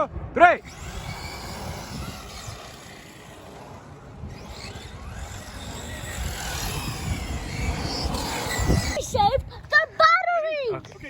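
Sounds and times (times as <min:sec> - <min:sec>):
rc truck motors whining: 0:00.6 - 0:09.7.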